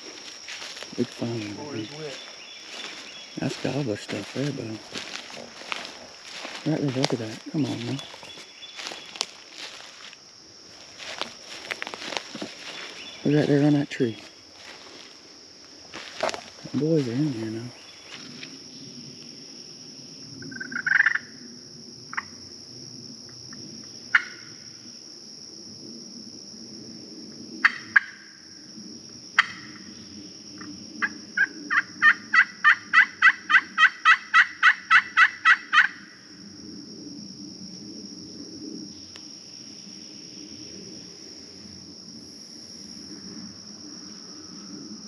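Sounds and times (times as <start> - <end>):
turkey gobbling: 31.4 - 36.0
turkey yelps: 31.7 - 36.0.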